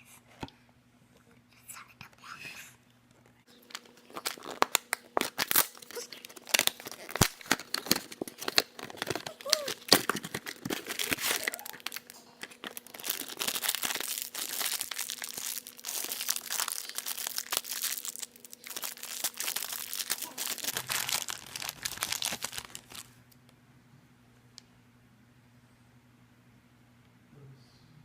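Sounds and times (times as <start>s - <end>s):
packaging crinkling and tearing: 3.5s - 23.2s.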